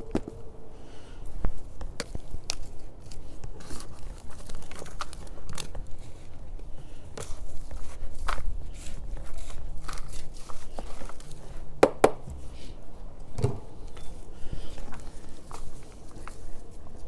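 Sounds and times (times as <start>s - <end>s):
hands digging through potting soil: 1.2s - 12.8s, 13.8s - 17.0s.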